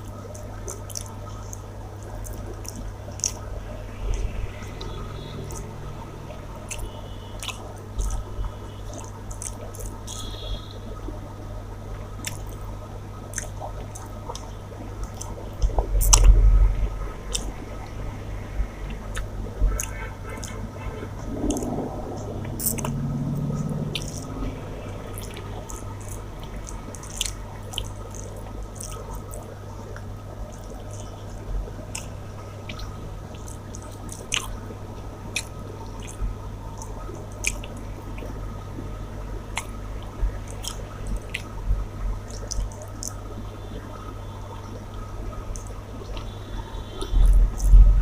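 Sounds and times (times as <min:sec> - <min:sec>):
wet chewing and mouth smacks: 0:00.0 - 0:05.8, 0:06.6 - 0:08.3, 0:08.9 - 0:10.6, 0:12.2 - 0:12.7, 0:13.3 - 0:16.4, 0:17.3 - 0:17.9, 0:18.8 - 0:20.6, 0:21.3 - 0:34.6, 0:35.3 - 0:38.4, 0:39.5 - 0:41.6, 0:42.2 - 0:43.3, 0:45.5 - 0:46.4
steady low hum: 0:00.0 - 0:48.0.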